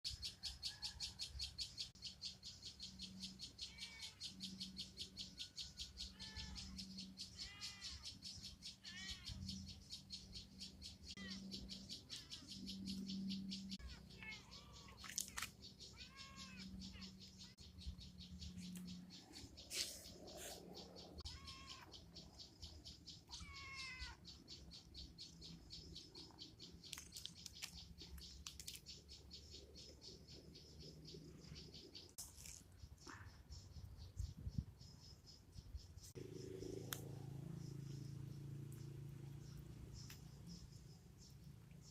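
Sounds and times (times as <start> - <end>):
high animal calls: 19.7 - 22.0.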